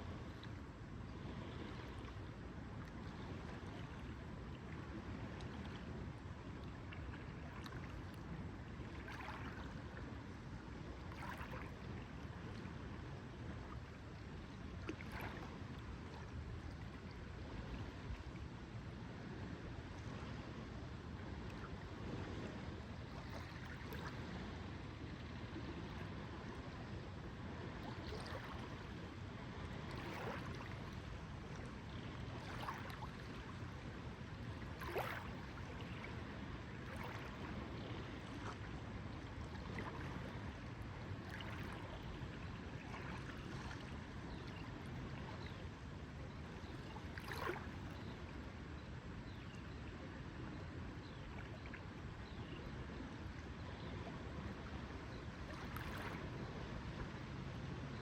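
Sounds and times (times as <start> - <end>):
water lapping gently: 0.0 - 58.0
small water splashes: 6.6 - 10.1, 11.0 - 12.7, 14.7 - 18.0, 23.1 - 24.5, 27.6 - 28.9, 29.7 - 33.7, 34.4 - 36.2, 36.8 - 38.8, 39.4 - 40.6, 41.2 - 45.6, 46.7 - 48.1, 55.5 - 57.0.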